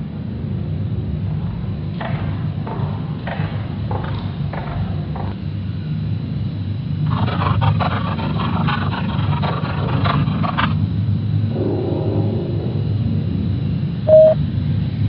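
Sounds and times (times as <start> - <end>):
low rumbling drone: 10.8 - 15.0.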